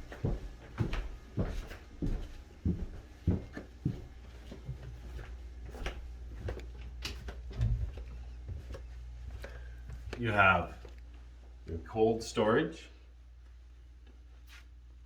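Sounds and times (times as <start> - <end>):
footsteps on stairs: 0.0 - 10.9
steady low hum: 0.0 - 15.0.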